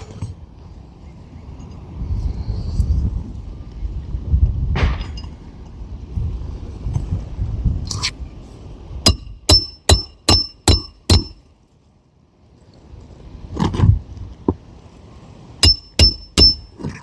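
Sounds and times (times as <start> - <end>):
hammer blows on roofing nail: 9.1 - 11.4, 15.6 - 16.7.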